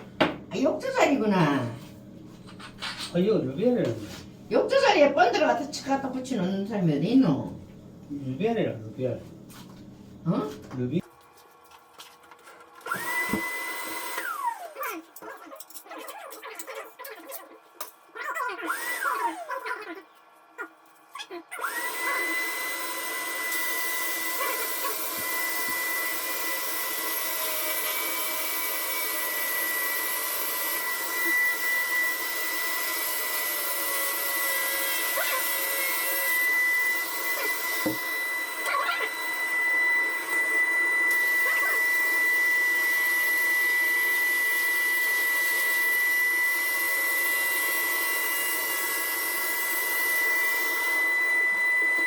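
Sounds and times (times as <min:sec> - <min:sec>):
power tool motor whining: 0:12.8 - 0:15.0, 0:18.6 - 0:19.8, 0:21.5 - 0:52.0.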